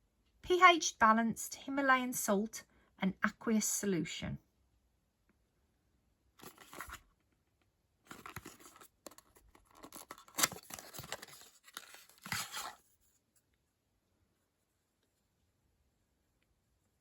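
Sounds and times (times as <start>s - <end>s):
packaging rustling: 6.4s - 7.0s, 8.1s - 12.9s.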